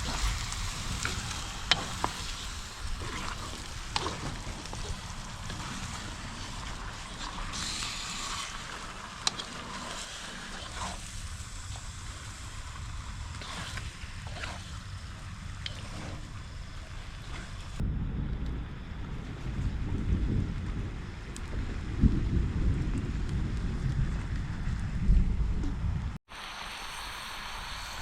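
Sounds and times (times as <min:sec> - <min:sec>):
wind buffeting microphone: 0:00.0 - 0:08.3, 0:11.0 - 0:26.2
steady hiss: 0:00.0 - 0:17.8, 0:26.3 - 0:28.0.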